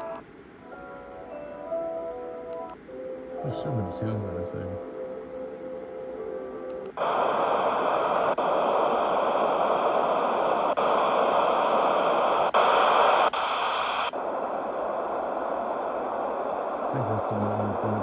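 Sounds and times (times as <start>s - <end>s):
soft music tones: 0.0s - 7.0s
white noise machine hiss: 0.0s - 18.0s.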